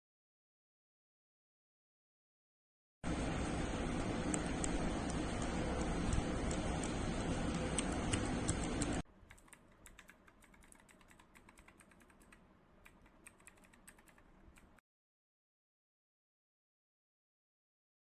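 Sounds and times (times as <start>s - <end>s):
keyboard switches clicking: 4.3s - 14.7s.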